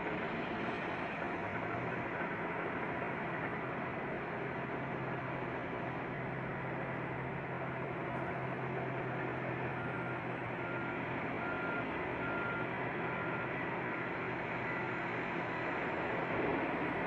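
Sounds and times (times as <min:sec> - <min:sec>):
diesel engines rumbling: 0:00.0 - 0:17.0
reversing alarm beeping: 0:09.6 - 0:15.7.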